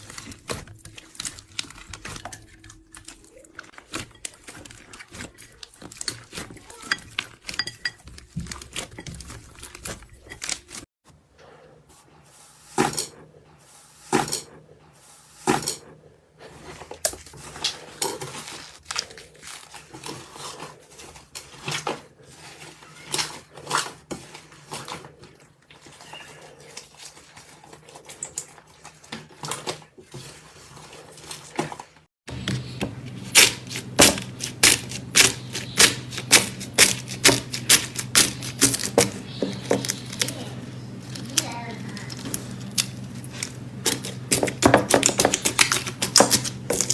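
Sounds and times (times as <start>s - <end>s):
low hum: 32.3s - 44.4s.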